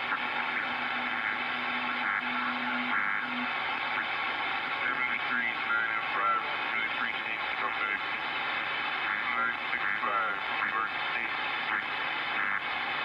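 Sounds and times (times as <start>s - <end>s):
garbled radio signal warbling: 0.0s - 3.5s
radio static hiss: 0.0s - 13.0s.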